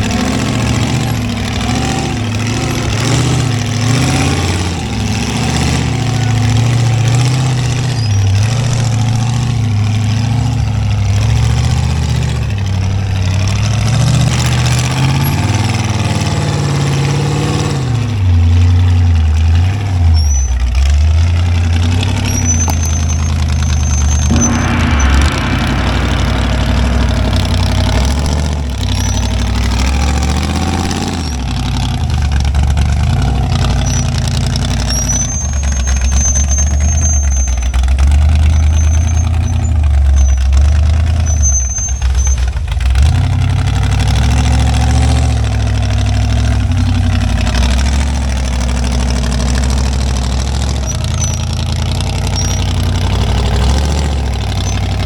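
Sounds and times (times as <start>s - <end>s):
engine running at low revs: 0.0s - 41.0s
thin high squeak: 5.2s - 9.0s, 20.1s - 20.9s, 22.0s - 31.4s, 33.7s - 42.6s, 49.5s - 55.0s.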